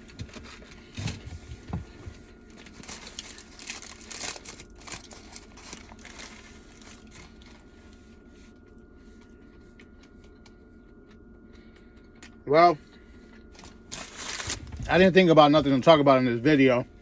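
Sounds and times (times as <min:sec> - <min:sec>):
paper wrapper crinkling: 0:02.5 - 0:07.7, 0:13.6 - 0:14.8.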